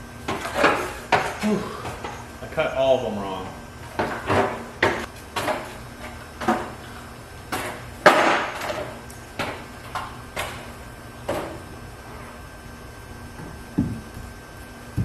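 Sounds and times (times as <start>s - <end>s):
wooden boards knocking and clunking: 7.5s - 10.7s, 13.4s - 14.1s.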